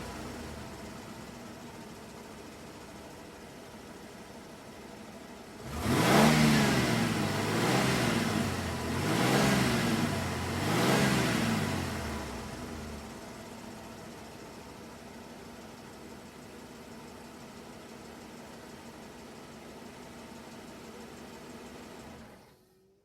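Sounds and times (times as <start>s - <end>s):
car engine idling and revving: 0.0s - 23.0s.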